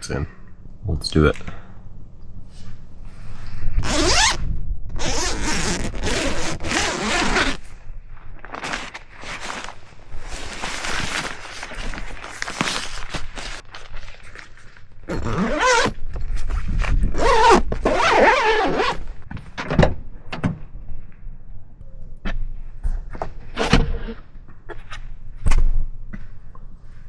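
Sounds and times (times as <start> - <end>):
fabric rustling: 3.8 - 4.4, 5.0 - 7.8, 8.4 - 16.0
tent zipper rasping: 3.8 - 4.4, 5.0 - 7.7, 8.6 - 13.6, 15.1 - 16.0, 17.1 - 19.0.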